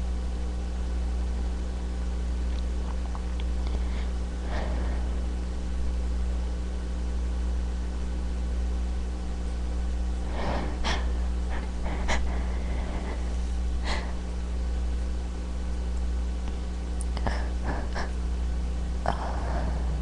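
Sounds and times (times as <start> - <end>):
steady low hum: 0.0 - 20.0
nasal sniffs and breaths: 3.6 - 5.2, 10.2 - 14.3, 17.2 - 18.2.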